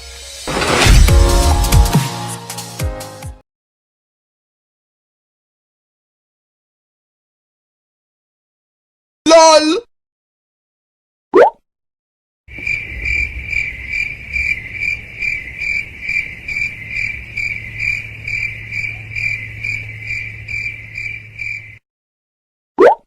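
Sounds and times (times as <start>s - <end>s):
cricket chirping: 12.5s - 21.8s.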